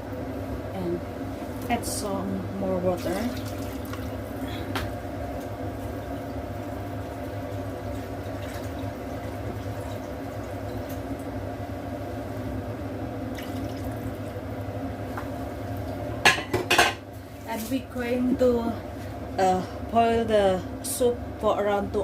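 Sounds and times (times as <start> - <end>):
water running into a pot: 2.8 - 4.4, 6.3 - 11.4, 13.2 - 14.3.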